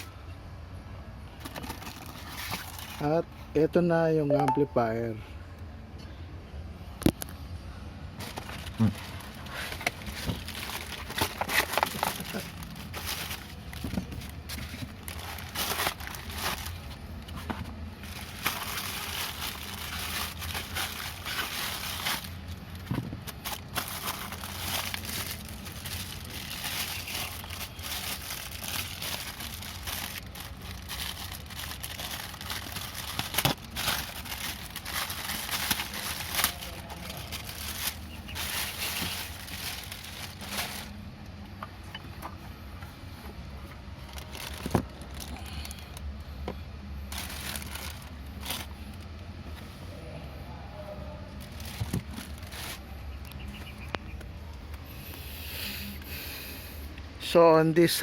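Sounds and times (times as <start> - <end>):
packaging crinkling and rustling: 1.4 - 3.2, 8.1 - 41.0, 43.9 - 46.1, 47.0 - 49.2, 51.3 - 54.8.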